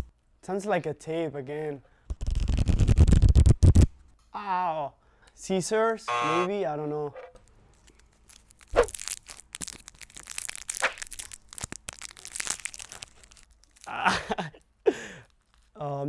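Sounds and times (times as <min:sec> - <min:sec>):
plastic wrapper crinkling: 0:07.7 - 0:15.8.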